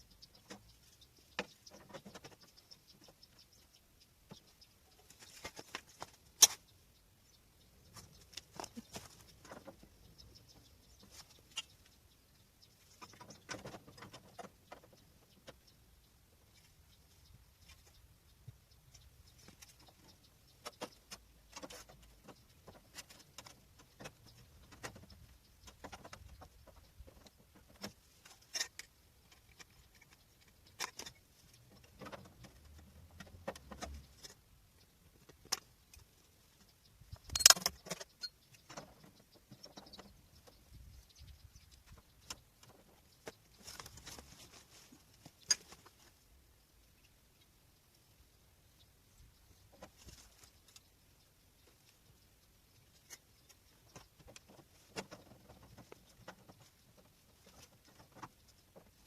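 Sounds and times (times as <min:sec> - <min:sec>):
sharp click: 0:37.3 - 0:38.1.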